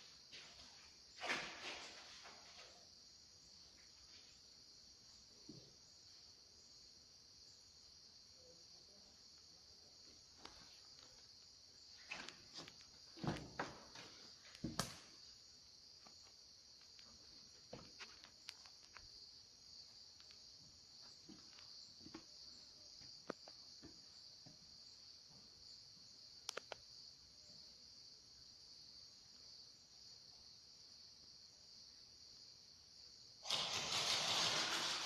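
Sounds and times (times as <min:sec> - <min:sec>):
insect chorus chirring: 0:00.0 - 0:35.0
sharp clicks: 0:26.4 - 0:26.9.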